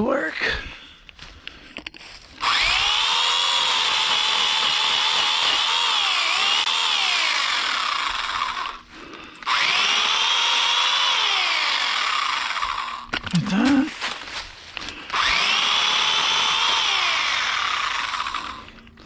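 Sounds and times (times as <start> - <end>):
electric chainsaw cutting wood: 2.4 - 13.9, 14.8 - 19.0.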